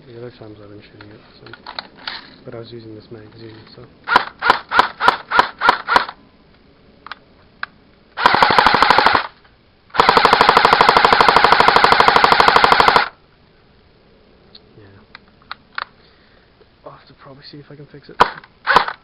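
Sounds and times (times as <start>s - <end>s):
airsoft rifle full-auto bursts: 4.1s - 6.2s, 8.2s - 13.2s, 18.2s - 19.0s
airsoft rifle single shots: 18.2s - 19.0s.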